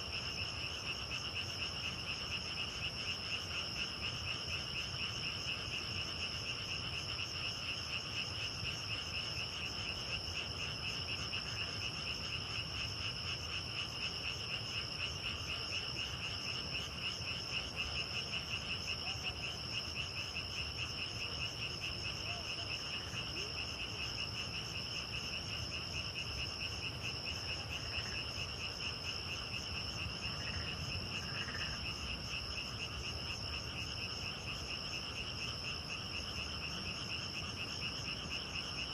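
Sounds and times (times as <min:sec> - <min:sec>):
insects trilling: 0:00.0 - 0:38.9
frog calls: 0:08.9 - 0:38.9.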